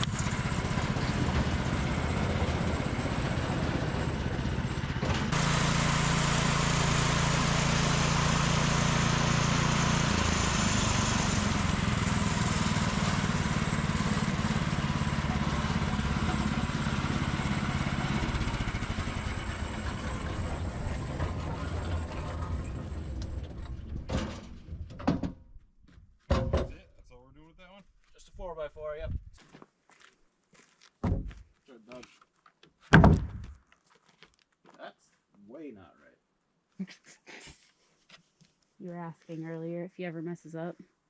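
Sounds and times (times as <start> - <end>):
gas engine running under load: 0.0 - 24.2.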